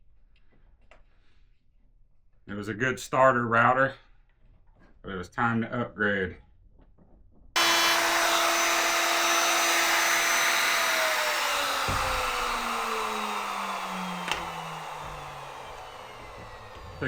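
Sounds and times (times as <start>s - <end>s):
electric wood router whining: 7.6s - 17.0s.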